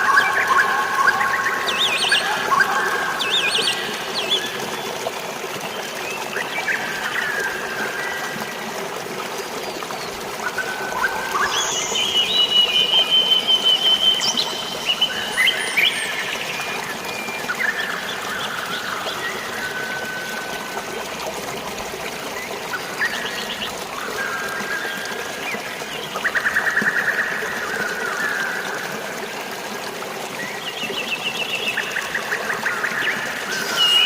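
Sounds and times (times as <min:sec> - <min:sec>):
trickling water: 0:00.0 - 0:34.0
rapid pulsing bird call: 0:31.6 - 0:34.0
birds whistling: 0:33.6 - 0:34.0.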